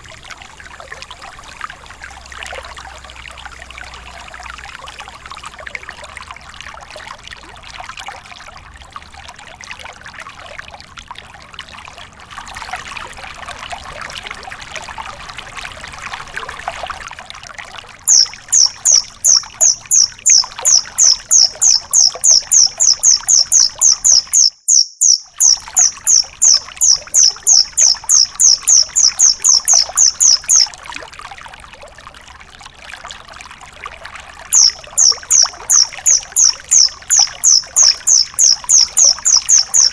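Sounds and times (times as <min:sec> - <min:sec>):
trickling water: 0:00.0 - 0:39.9
songbird sharp high falling call: 0:18.1 - 0:30.7, 0:34.6 - 0:39.9.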